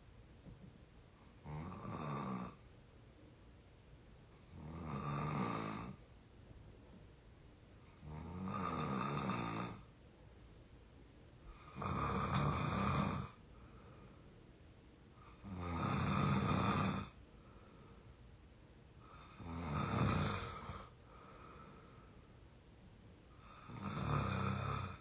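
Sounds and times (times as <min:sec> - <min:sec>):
person snoring: 0:01.4 - 0:02.6, 0:04.5 - 0:06.0, 0:08.0 - 0:09.9, 0:11.5 - 0:13.4, 0:15.3 - 0:17.2, 0:19.0 - 0:22.0, 0:23.4 - 0:25.0
quiet breathing: 0:04.2 - 0:25.0.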